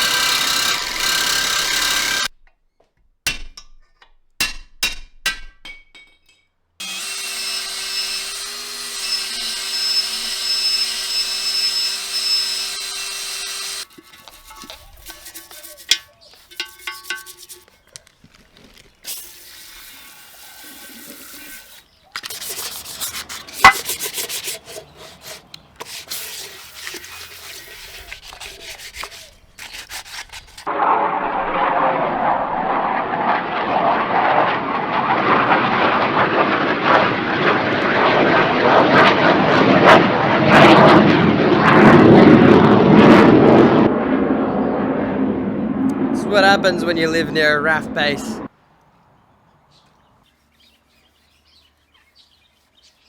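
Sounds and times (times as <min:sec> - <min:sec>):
workshop clicks and scraping: 0:13.8 - 0:19.8, 0:21.0 - 0:30.7
jet passing overhead: 0:30.7 - 0:48.5.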